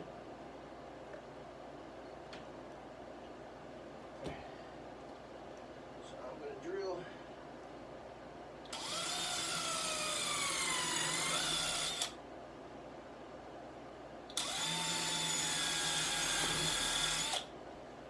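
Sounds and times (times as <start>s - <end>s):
power drill whining: 8.7s - 12.2s, 14.4s - 17.5s.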